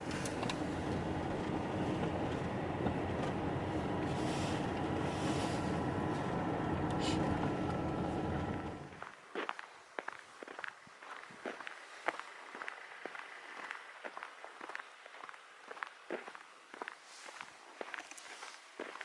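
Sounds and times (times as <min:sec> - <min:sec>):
vehicle rumbling: 0:00.0 - 0:09.2.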